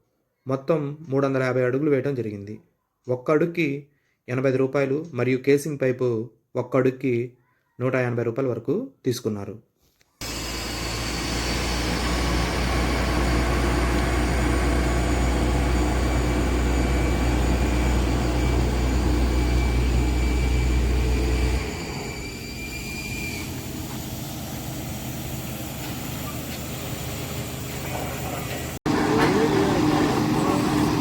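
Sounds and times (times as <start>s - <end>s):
heavy engine humming: 10.2s - 31.0s.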